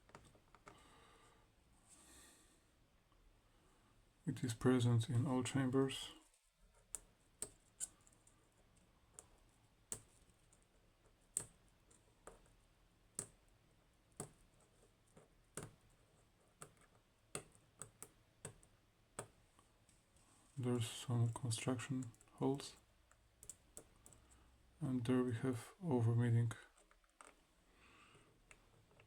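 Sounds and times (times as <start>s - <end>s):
small clicks and taps: 0.0s - 0.8s, 6.8s - 12.6s, 13.2s - 13.5s, 14.1s - 14.5s, 15.1s - 20.0s, 21.3s - 24.5s, 26.8s - 27.4s.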